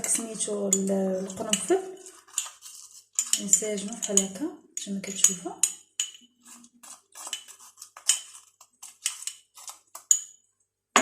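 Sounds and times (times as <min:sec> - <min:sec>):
spoon clinking against container: 0:00.0 - 0:10.5.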